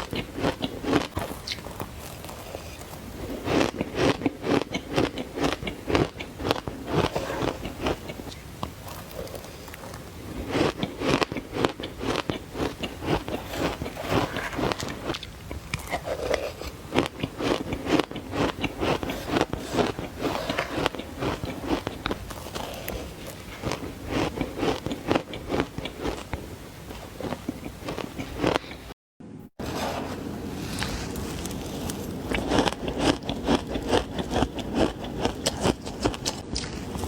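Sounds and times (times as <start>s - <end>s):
crunching frozen ice bites: 30.8s - 37.0s.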